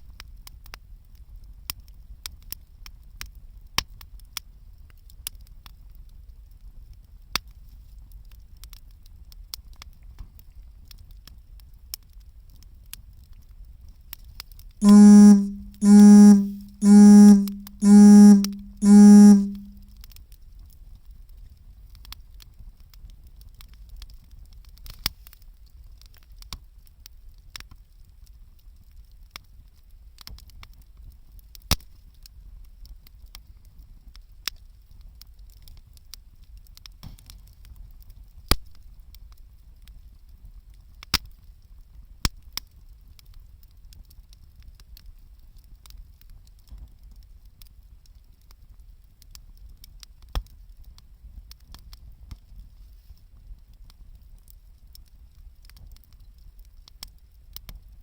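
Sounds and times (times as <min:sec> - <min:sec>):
loud low beeps: 0:14.8 - 0:19.8.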